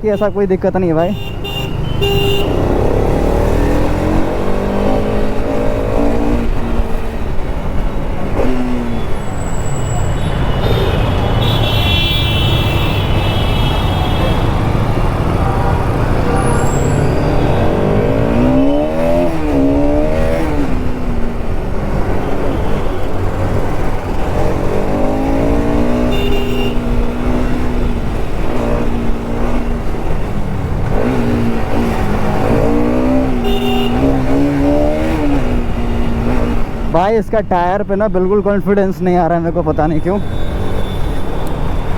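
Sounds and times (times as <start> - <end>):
motorcycle engine accelerating: 2.4 - 9.3, 13.5 - 22.6, 23.2 - 36.9.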